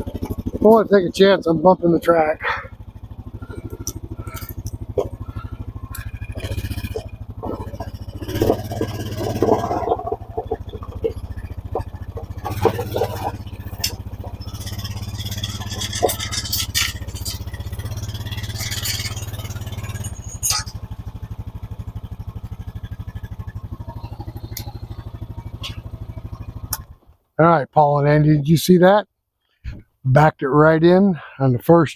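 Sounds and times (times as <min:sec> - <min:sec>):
log clanking and scraping: 0:00.0 - 0:01.1, 0:02.0 - 0:20.8
atv engine running: 0:00.0 - 0:27.4.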